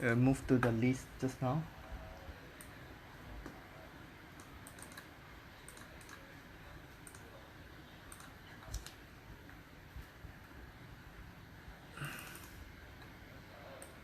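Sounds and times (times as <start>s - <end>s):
mouse and keyboard clicks: 4.4s - 6.3s, 7.0s - 7.3s, 8.1s - 9.0s.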